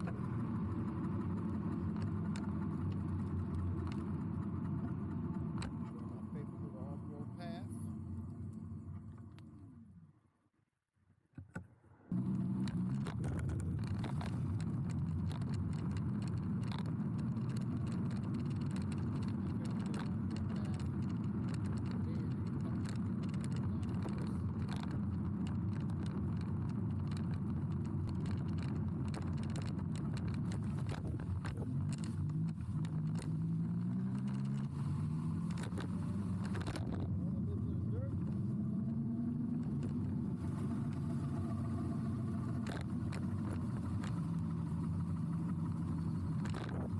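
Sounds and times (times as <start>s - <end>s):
small rattles: 0.0s - 7.8s, 12.1s - 46.9s
rushing wind and road noise: 12.1s - 46.9s.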